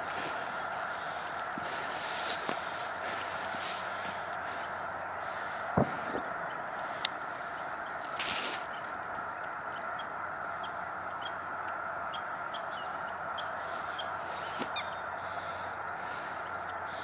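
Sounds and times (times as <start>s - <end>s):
distant din of bird calls: 0.0s - 17.0s.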